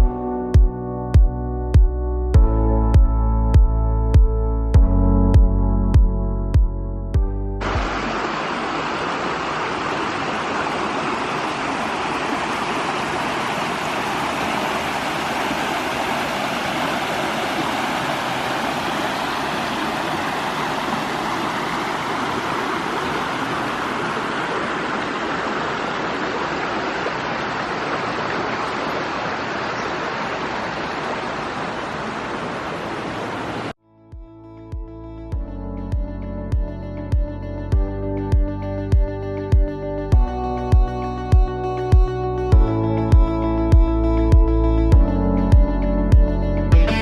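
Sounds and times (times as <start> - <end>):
steady rushing noise: 7.6 - 28.2.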